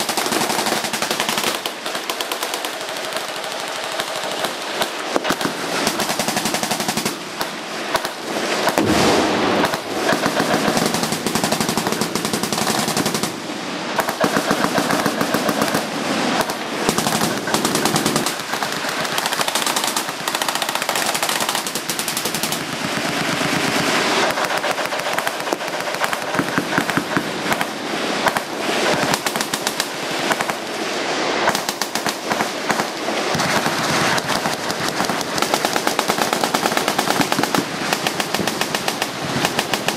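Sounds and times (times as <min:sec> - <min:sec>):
machine guns firing: 0:00.0 - 0:30.6, 0:31.5 - 0:39.9.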